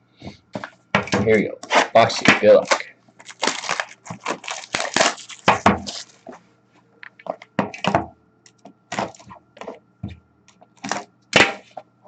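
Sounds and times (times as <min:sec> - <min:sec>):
packaging clicks and rustles: 0:02.5 - 0:06.3
packaging ripping open: 0:02.6 - 0:06.2.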